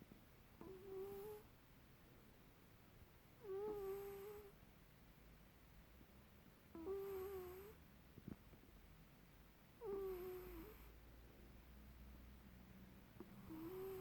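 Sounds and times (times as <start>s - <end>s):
cat snoring with squeaks: 0.6s - 1.5s, 3.4s - 4.5s, 6.8s - 7.8s, 9.8s - 11.0s, 13.2s - 14.0s.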